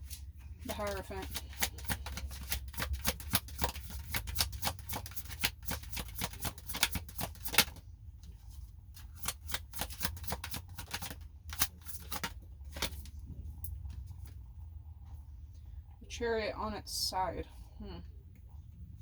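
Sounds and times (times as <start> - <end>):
cards being shuffled: 0.0 - 7.8, 9.0 - 13.2.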